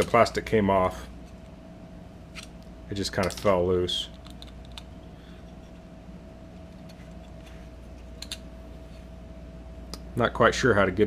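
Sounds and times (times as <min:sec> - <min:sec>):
low electrical hum: 0:00.0 - 0:11.0
small plastic parts clicking: 0:04.1 - 0:04.9.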